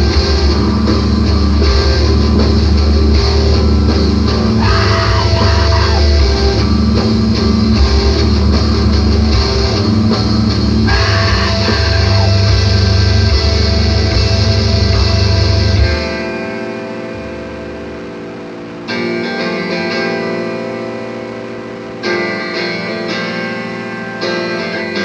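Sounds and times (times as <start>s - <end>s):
drum kit: 0.0s - 17.4s
distorted electric guitars: 0.0s - 25.0s.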